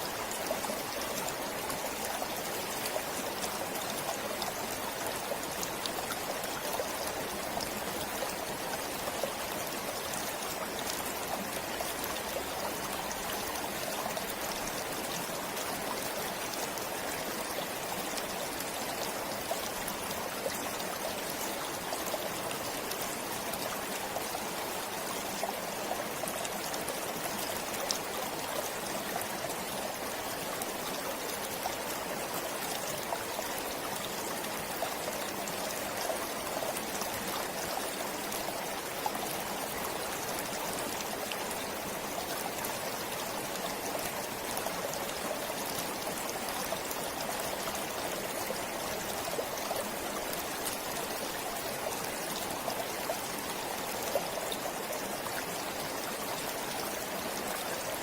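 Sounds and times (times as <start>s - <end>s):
stream flowing: 0.0s - 58.0s
water splashes and trickles: 0.0s - 58.0s.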